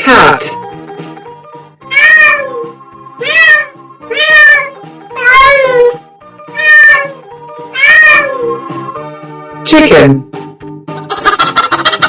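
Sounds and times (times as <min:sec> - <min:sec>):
cat meowing: 0:01.9 - 0:08.5.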